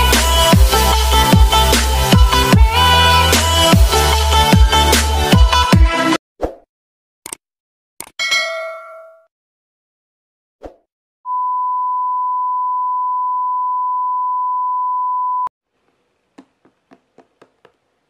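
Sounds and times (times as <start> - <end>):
faint taps: 15.8 - 17.8.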